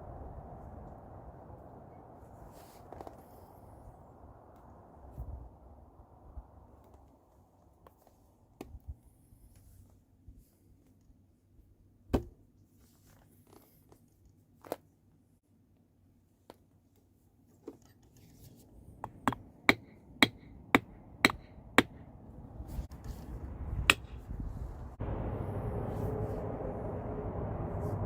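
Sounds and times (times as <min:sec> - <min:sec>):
rustling handling noise: 0:12.4 - 0:15.4.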